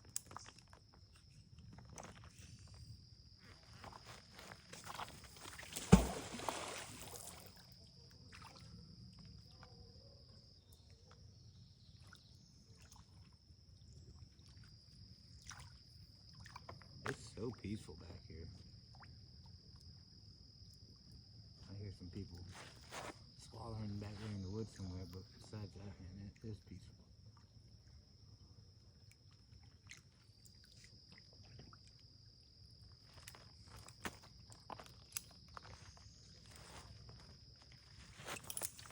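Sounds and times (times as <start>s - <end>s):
magnet splashing into water: 4.8s - 7.6s
insect trilling: 21.6s - 27.5s.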